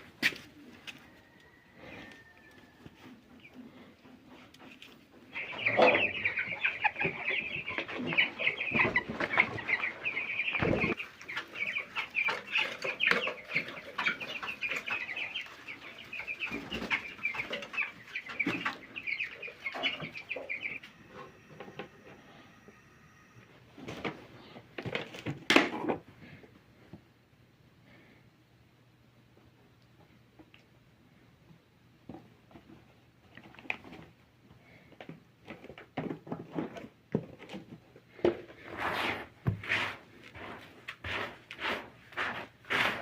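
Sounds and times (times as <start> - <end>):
chickens calling: 0.0 - 25.2.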